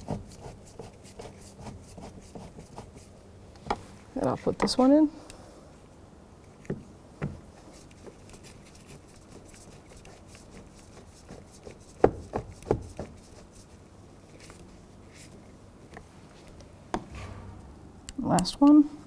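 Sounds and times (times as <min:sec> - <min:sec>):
sharp knocks: 0:16.9 - 0:18.0.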